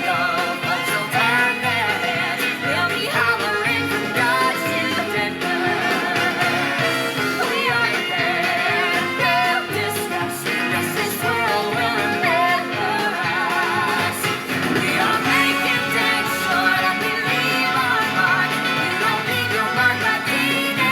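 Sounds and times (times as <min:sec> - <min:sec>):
singing voices over a band: 0:00.0 - 0:20.9.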